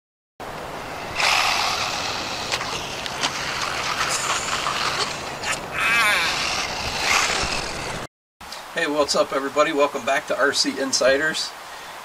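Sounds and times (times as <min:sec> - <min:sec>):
rc truck motor rushing: 0:00.6 - 0:08.1.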